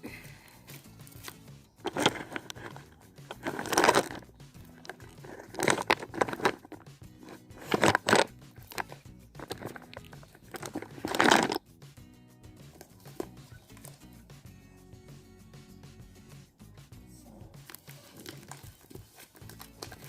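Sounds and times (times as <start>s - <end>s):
faint background music: 0.0s - 20.0s
slime squelching and crackling: 17.6s - 20.0s.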